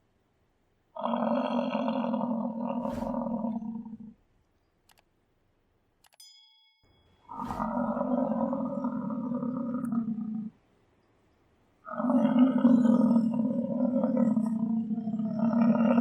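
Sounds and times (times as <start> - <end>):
high ringing note: 6.2 - 7.3
bison bellowing: 7.3 - 10.5, 11.9 - 16.0.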